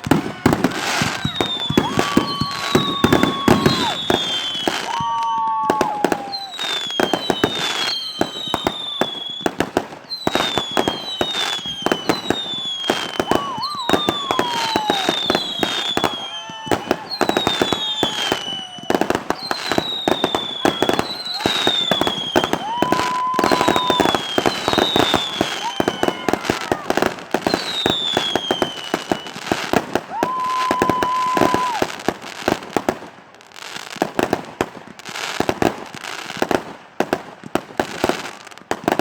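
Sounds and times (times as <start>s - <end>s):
fireworks bangs and crackles: 0.0s - 39.0s
low whistles: 0.7s - 31.9s
high falling whistles: 0.9s - 9.5s, 10.1s - 26.7s.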